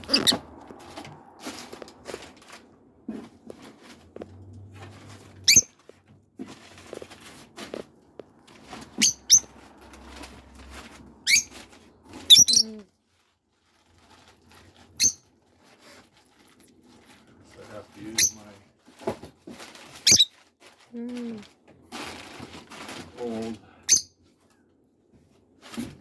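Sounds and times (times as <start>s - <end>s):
short high squeaks: 0.0s - 0.4s, 5.4s - 5.8s, 8.9s - 9.5s, 11.2s - 11.6s, 12.2s - 12.8s, 15.0s - 15.2s, 20.0s - 20.3s.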